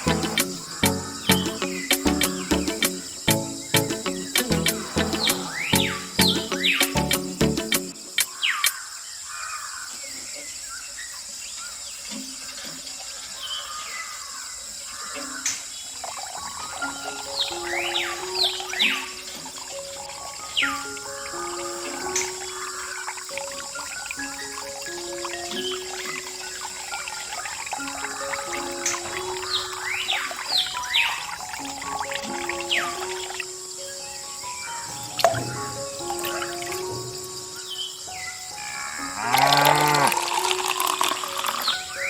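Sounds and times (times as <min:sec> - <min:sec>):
background music with low notes: 0:00.0 - 0:08.3
water splashing from hand pump: 0:23.2 - 0:32.7, 0:39.4 - 0:41.8.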